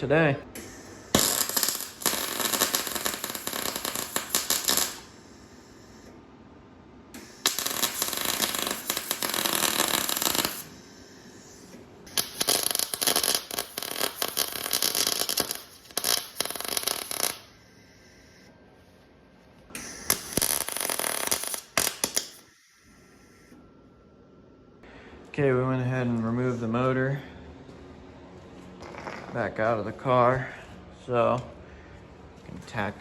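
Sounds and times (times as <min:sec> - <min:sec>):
welder arc crackling: 0:00.6 - 0:05.2, 0:07.2 - 0:10.8, 0:12.1 - 0:17.6, 0:19.8 - 0:22.5.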